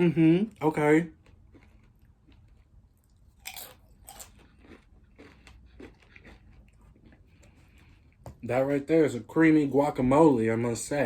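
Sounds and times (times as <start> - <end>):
tortilla chip crunching: 1.0 - 7.9.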